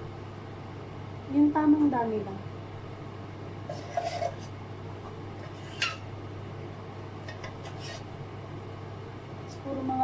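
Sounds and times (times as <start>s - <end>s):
steady low hum: 0.0s - 10.0s
soft scrapes: 7.6s - 8.1s.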